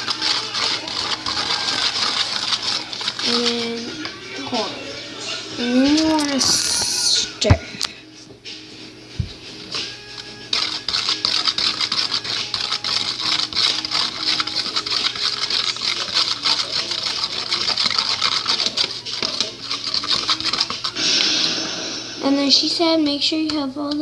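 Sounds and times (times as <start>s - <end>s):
spoon scraping plastic bowl: 0.0s - 4.8s, 5.6s - 7.3s, 9.6s - 21.3s.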